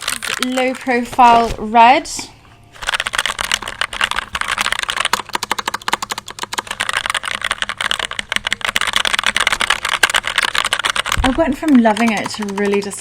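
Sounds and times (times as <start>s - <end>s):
mechanical keyboard typing: 2.8s - 13.0s.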